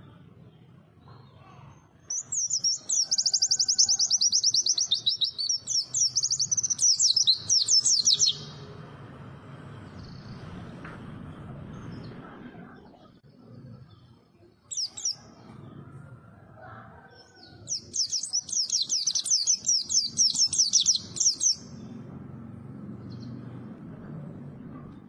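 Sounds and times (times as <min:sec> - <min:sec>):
bird twittering: 0:02.1 - 0:08.6, 0:14.7 - 0:15.2, 0:17.7 - 0:21.7.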